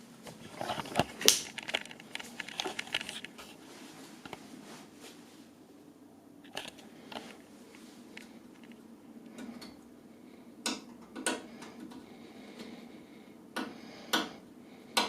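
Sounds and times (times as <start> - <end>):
crinkling and rustling: 0.0 - 5.6, 6.4 - 9.4
faint steady hum: 0.0 - 15.0.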